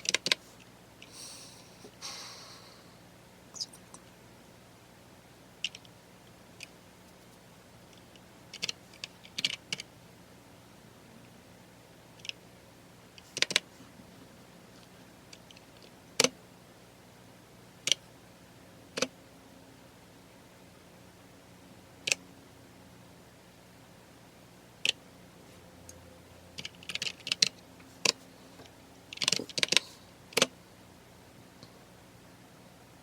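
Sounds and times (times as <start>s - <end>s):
computer keyboard keystrokes: 8.5s - 9.9s, 13.2s - 13.6s, 29.1s - 29.8s.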